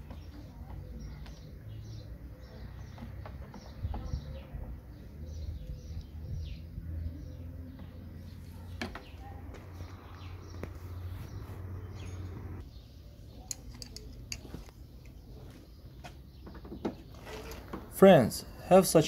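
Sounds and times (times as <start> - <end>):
hand tools clicking and knocking: 13.4 - 14.7.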